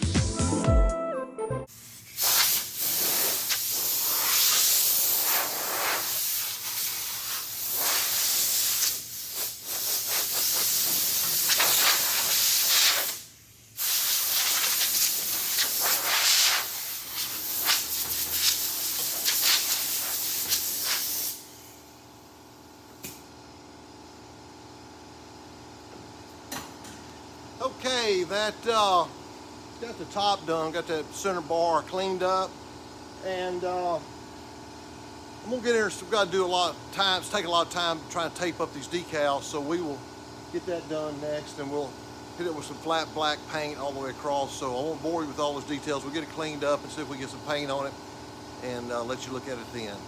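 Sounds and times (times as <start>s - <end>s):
loud hissing spray: 1.7s - 21.9s.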